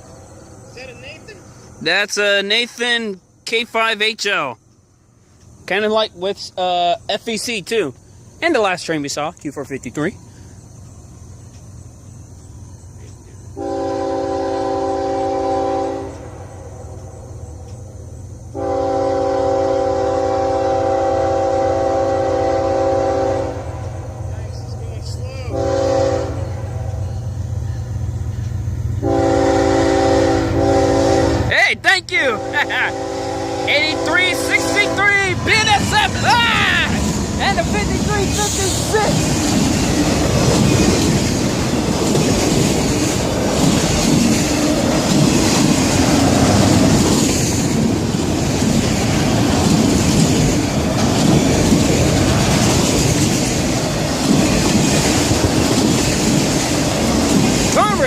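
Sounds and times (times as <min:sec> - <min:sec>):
diesel train rumbling: 0:00.0 - 0:58.0
locomotive air horn blasts: 0:13.6 - 0:16.4, 0:18.5 - 0:23.8, 0:25.5 - 0:27.0, 0:29.0 - 0:31.6, 0:32.2 - 0:35.9.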